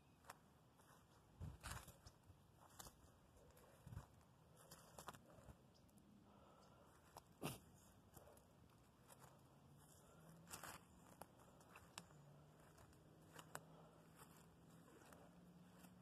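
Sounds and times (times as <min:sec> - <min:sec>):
faint clicks and crunches: 0:01.6 - 0:06.0, 0:08.1 - 0:16.0.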